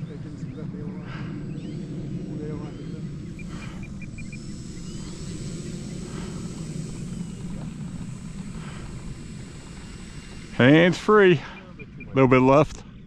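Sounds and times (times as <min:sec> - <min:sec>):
low wind rumble: 0:00.0 - 0:13.0
model airplane engine droning: 0:00.0 - 0:13.0.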